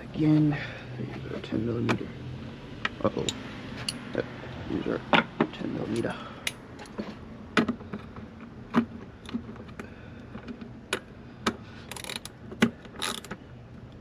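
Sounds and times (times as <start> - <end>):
metal tools and bolts clinking: 3.2 - 4.1.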